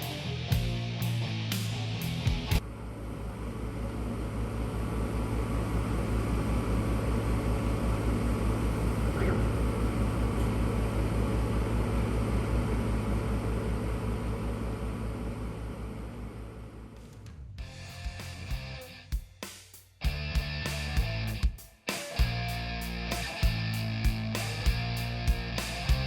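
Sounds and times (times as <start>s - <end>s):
machine humming and pulsing: 0.0s - 18.9s, 22.2s - 26.0s.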